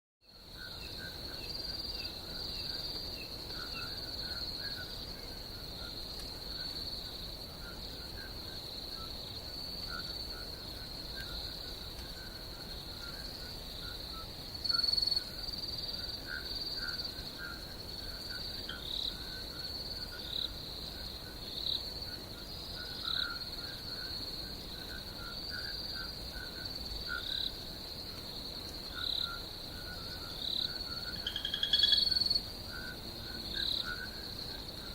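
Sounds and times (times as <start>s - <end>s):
crickets trilling: 0.3s - 34.9s
lower chirping calls: 31.2s - 32.2s.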